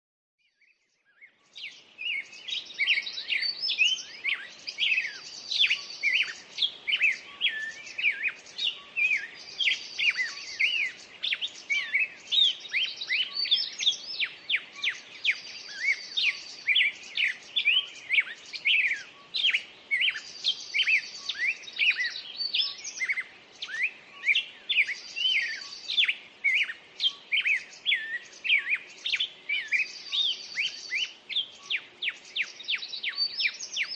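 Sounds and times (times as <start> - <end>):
songbirds chirping and whistling: 0.4 - 33.9
bird trill: 1.1 - 33.9.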